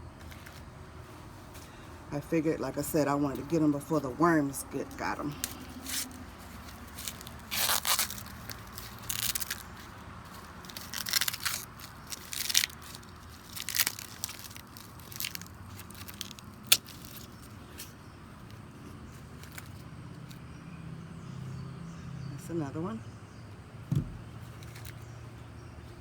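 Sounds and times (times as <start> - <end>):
corn husks tearing: 5.0 - 18.6, 19.3 - 20.4, 24.4 - 25.0.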